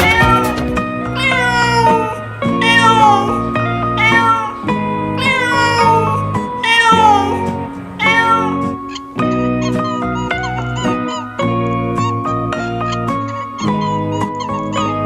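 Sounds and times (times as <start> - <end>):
background music: 0.0 - 15.0
cat meowing: 1.2 - 3.3, 4.0 - 4.6, 5.2 - 8.6.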